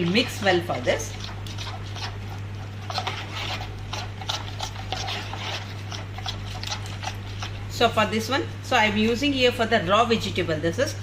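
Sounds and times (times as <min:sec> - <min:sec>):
spoon stirring sauce in bowl: 0:00.0 - 0:08.3
steady low hum: 0:00.0 - 0:11.0.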